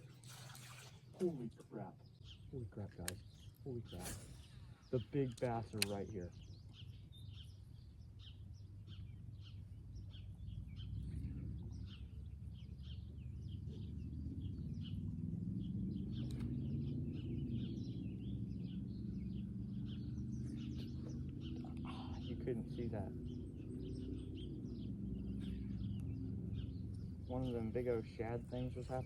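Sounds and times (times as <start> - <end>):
small birds chirping: 0.0 - 29.0
steady low hum: 0.0 - 29.0
low outdoor rumble: 1.2 - 29.0
sharp click: 5.2 - 6.2.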